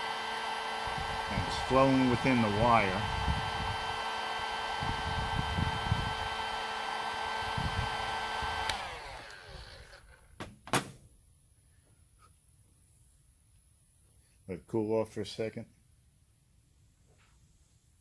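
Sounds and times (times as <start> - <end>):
heat gun motor whine: 0.0 - 11.0.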